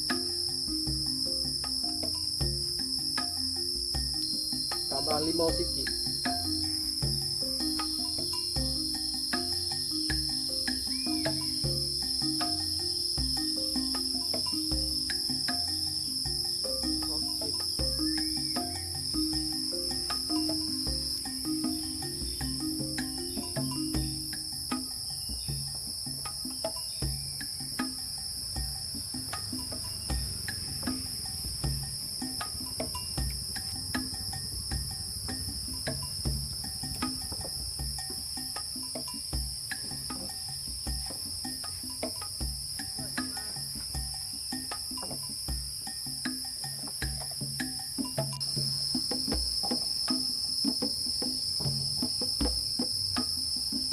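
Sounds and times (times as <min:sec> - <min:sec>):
insects chirping: 0:00.0 - 0:53.9.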